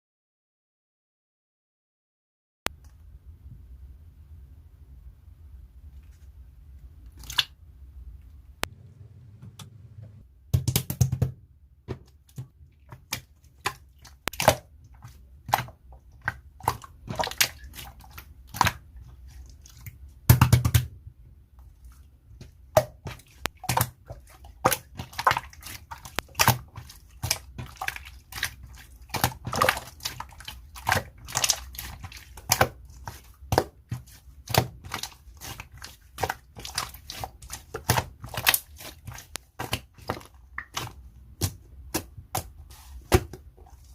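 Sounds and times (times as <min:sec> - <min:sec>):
slime squished by hand: 0:07.1 - 0:07.6, 0:12.3 - 0:20.9, 0:22.4 - 0:43.9.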